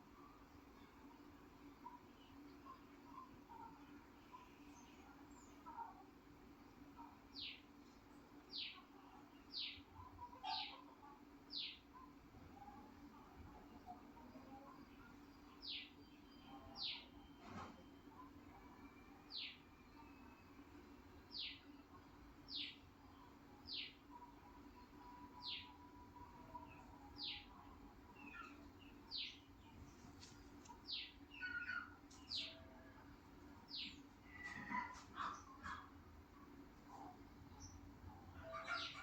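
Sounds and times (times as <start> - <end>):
faint steady hum: 0.0 - 39.0
bird chirping: 18.2 - 33.0, 33.6 - 35.8.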